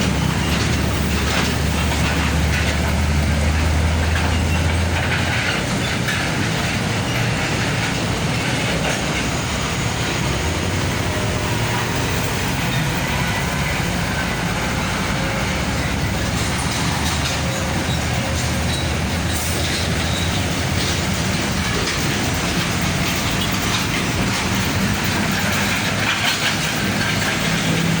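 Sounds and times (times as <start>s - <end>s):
heavy trucks passing: 0.0s - 28.0s.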